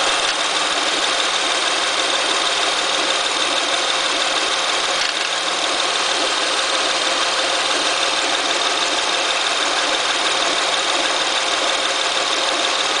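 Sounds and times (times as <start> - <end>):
car engine idling: 0.0 - 13.0.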